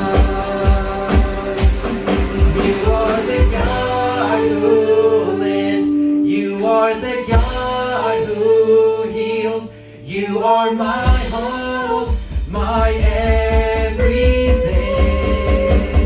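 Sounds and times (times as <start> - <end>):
people singing: 0.0 - 16.0
worship band music: 0.0 - 16.0
kick drum beat: 11.1 - 16.0.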